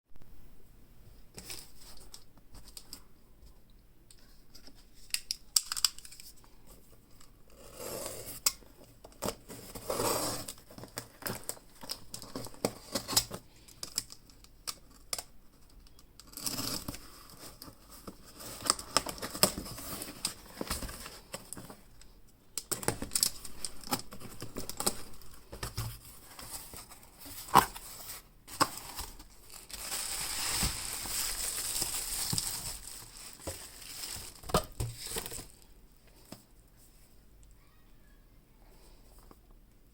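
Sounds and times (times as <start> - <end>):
plastic wrap tearing and crinkling: 26.8 - 35.6.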